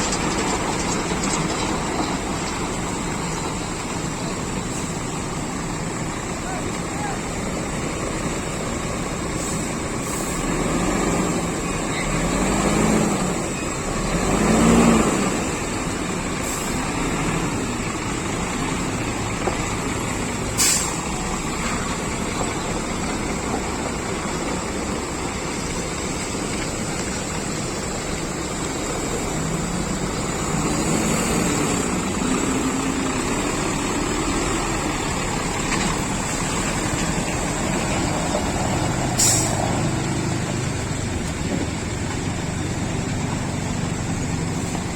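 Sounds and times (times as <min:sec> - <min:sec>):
lorries in street traffic: 0:00.0 - 0:44.9
air brake hiss: 0:09.4 - 0:10.5, 0:20.6 - 0:21.1, 0:39.2 - 0:39.7.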